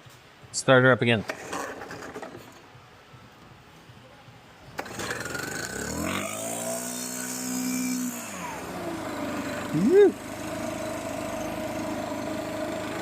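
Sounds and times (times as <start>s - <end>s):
leaf blower engine revving: 4.7s - 13.0s.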